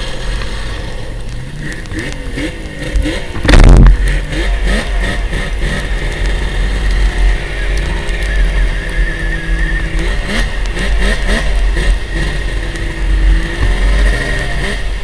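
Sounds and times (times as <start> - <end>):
snowmobile engine revving: 0.0 - 15.0
wind rumble on microphone: 2.9 - 4.6.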